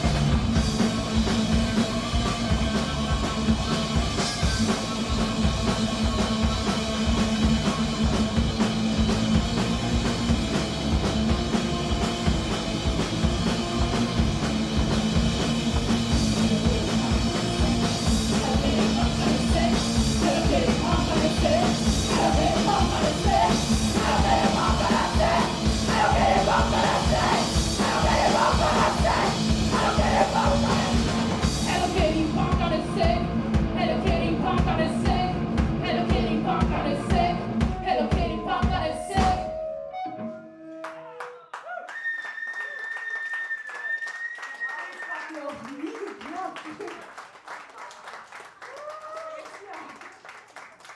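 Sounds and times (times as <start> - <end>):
punk rock band playing: 0.0 - 39.8
yelled sung vocals: 15.9 - 39.6.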